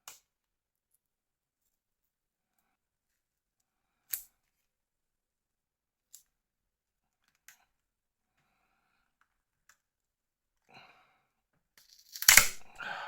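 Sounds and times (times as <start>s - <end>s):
clicks of small phone parts: 11.8s - 12.7s
sharp exhale of effort: 12.7s - 13.0s.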